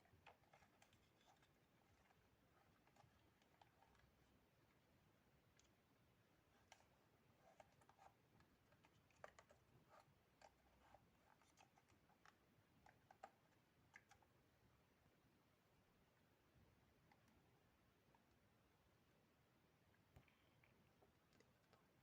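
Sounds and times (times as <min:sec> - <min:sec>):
faint clicks and light taps: 0:00.0 - 0:05.8, 0:06.5 - 0:14.5, 0:16.1 - 0:18.5, 0:19.9 - 0:22.0.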